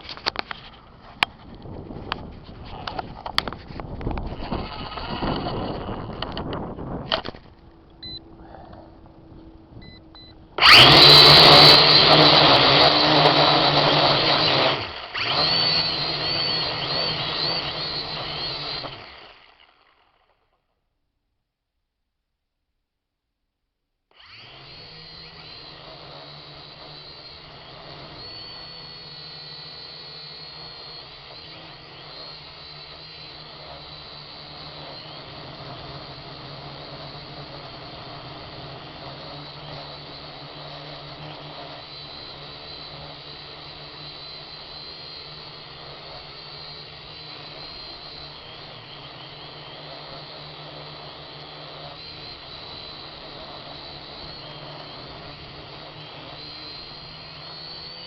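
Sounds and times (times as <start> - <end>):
quadcopter propellers whirring: 0.0 - 20.4, 24.1 - 58.0
gusty wind: 0.8 - 11.1.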